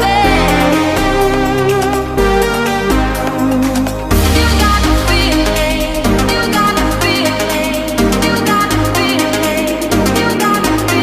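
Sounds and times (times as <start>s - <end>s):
electronic dance music: 3.2s - 8.5s.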